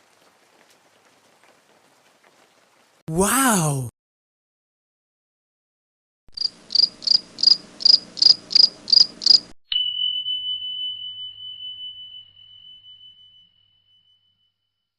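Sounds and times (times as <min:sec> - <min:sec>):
high pure ringing tone: 0:09.7 - 0:14.8.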